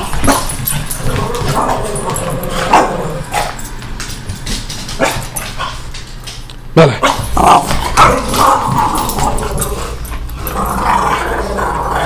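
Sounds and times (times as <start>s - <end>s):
dogs yipping and barking: 0.1s - 3.7s.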